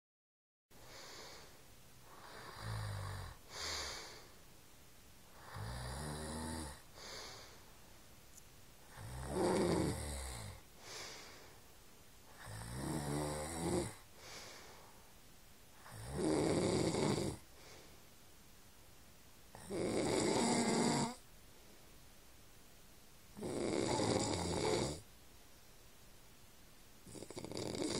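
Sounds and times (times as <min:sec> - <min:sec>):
man snoring: 0:02.1 - 0:04.2, 0:05.4 - 0:06.8, 0:08.9 - 0:10.6, 0:12.4 - 0:14.0, 0:15.8 - 0:17.4, 0:19.5 - 0:21.2, 0:23.4 - 0:25.0, 0:27.1 - 0:27.9.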